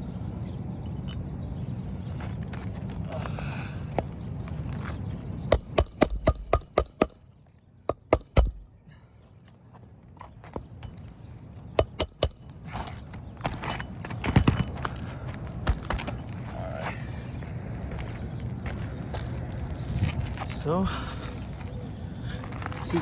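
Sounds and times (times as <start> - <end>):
hammer striking nails: 5.5 - 7.2, 7.9 - 8.8, 11.8 - 12.5.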